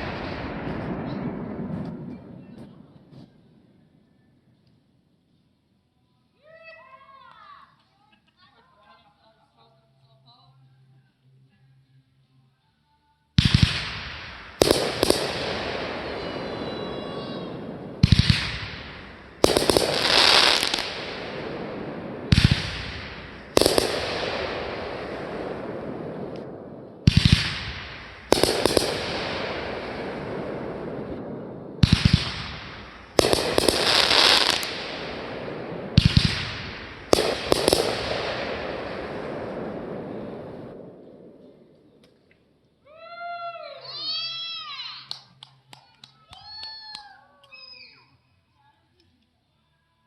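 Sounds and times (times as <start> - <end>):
fireworks bangs: 0.0 - 4.1, 13.4 - 42.4
crackling hiss: 0.0 - 6.4, 10.5 - 42.8.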